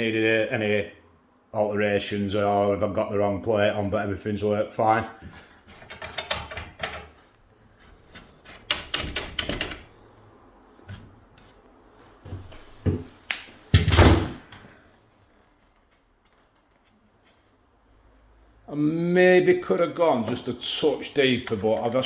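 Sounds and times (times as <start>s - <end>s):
lock hardware clicks and rattles: 5.8s - 7.2s, 8.6s - 9.9s.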